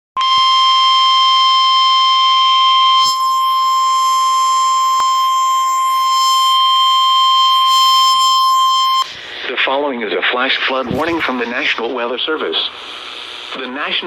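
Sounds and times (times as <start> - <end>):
loud steady alarm tone: 0.2 - 9.4.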